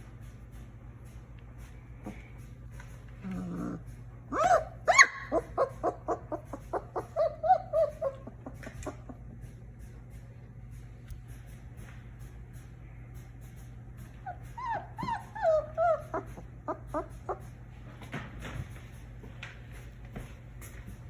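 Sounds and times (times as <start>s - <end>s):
puppy grunting: 3.1s - 9.4s, 14.2s - 17.6s
puppy whining and yelping: 3.2s - 9.3s, 14.2s - 17.6s.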